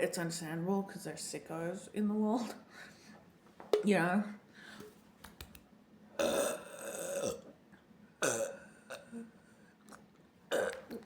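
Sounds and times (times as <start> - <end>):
woman burping: 6.2 - 7.5, 8.2 - 9.4, 10.5 - 11.0.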